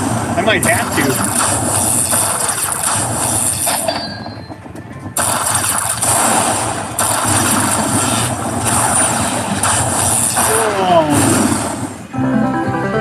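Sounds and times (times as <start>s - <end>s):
slot machine electronic effects: 0.6s - 10.9s.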